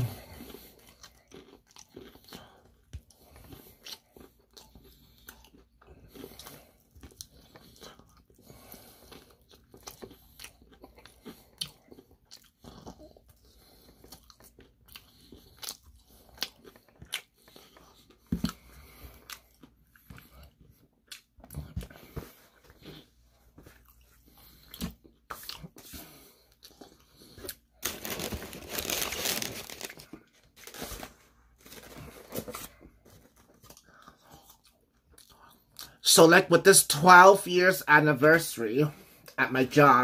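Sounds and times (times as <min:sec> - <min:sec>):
crunchy bites and chewing: 0:00.0 - 0:23.1.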